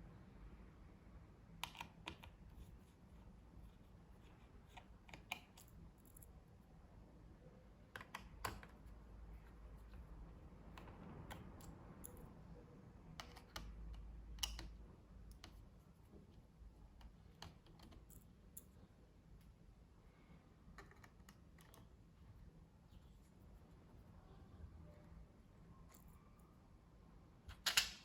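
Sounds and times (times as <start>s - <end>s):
small clicks and taps of tools: 13.1s - 16.4s.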